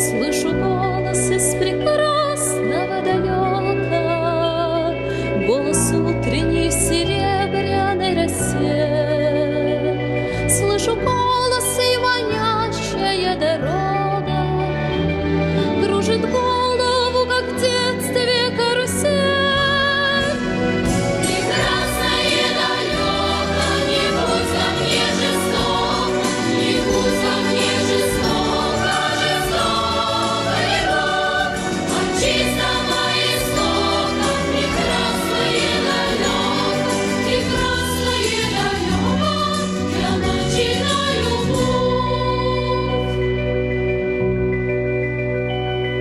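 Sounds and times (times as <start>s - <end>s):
choir singing with instruments: 19.7s - 43.4s.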